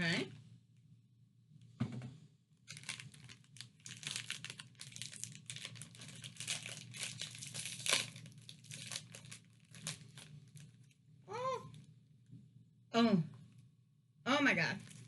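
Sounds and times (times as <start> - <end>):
snack wrapper crinkling: 2.7 - 11.0, 14.8 - 15.0.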